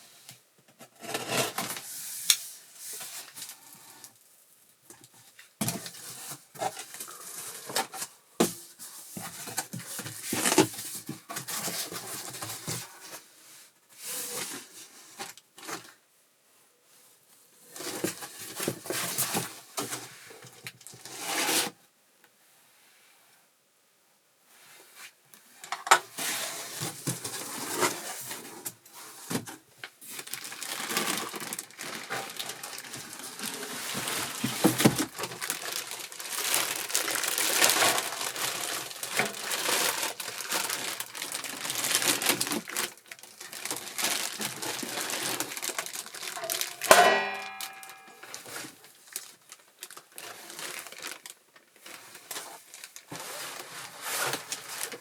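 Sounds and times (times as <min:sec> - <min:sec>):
plastic wrapping crinkling: 0:29.8 - 0:55.0.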